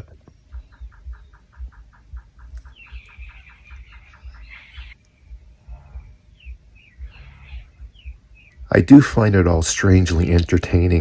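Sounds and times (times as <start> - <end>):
low thumps on microphone: 0.0 - 9.4
fast pulsed animal calls: 0.4 - 8.8.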